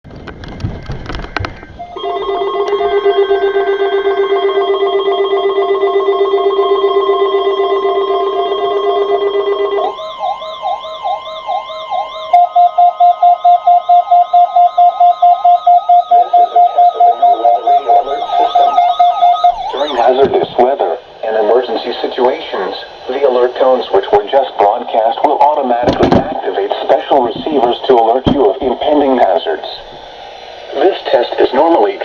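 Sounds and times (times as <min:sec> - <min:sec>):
steady chord of alert tones: 0:01.8 - 0:13.6, 0:15.6 - 0:24.2
pulsing beeping tone: 0:01.8 - 0:24.4
rapidly warbling alert tone: 0:01.8 - 0:29.5.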